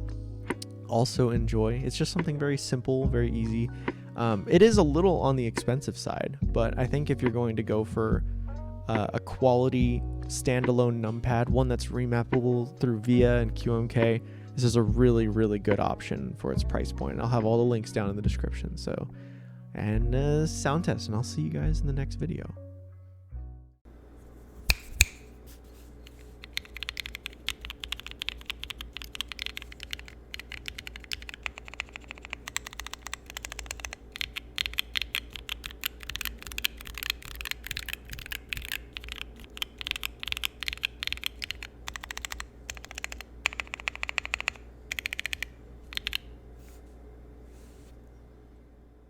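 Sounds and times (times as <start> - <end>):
faint steady hum: 23.9 - 49.0
keyboard keys typing: 26.1 - 46.3.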